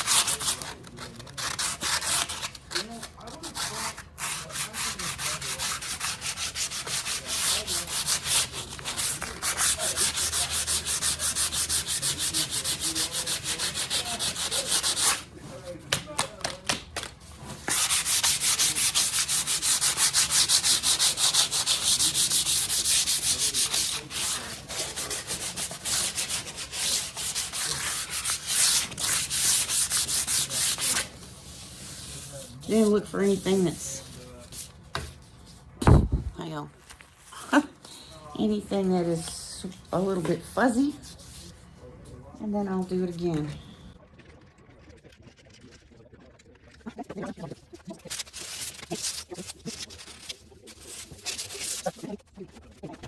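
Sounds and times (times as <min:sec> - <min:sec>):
sandpaper rubbing on board: 0:00.0 - 0:15.2, 0:17.0 - 0:33.6, 0:48.0 - 0:52.2.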